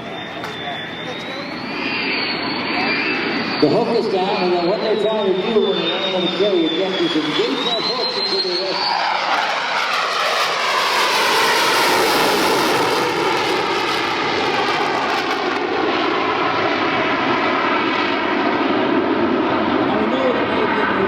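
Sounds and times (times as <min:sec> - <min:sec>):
jet engines roaring by: 0:00.0 - 0:21.0.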